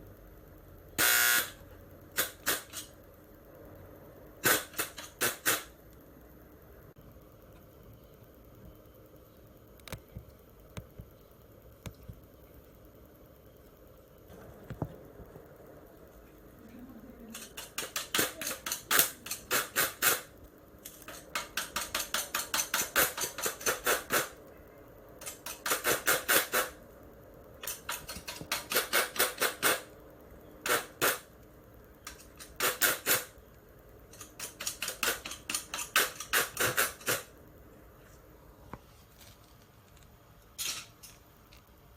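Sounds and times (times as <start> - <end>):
rapid sharp clicking: 17.3 - 24.5, 25.2 - 26.8, 27.6 - 30.0, 30.6 - 37.4.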